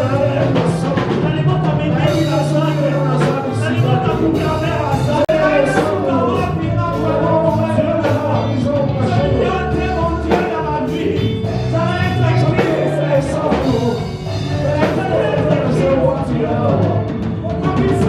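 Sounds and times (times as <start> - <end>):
people singing: 0.0 - 18.0
praise band playing: 0.0 - 18.0
steady drum beat: 0.0 - 18.0.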